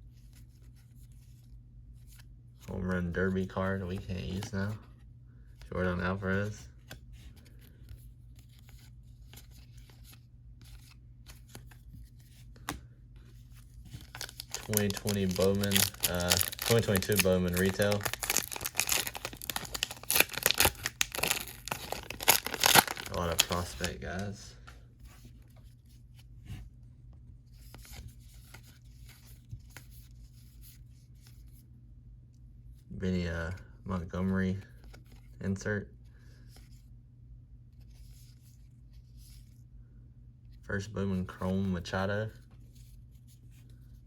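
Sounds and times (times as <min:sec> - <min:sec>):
handling cards and packaging: 0:00.0 - 0:31.5
steady low hum: 0:00.0 - 0:44.0.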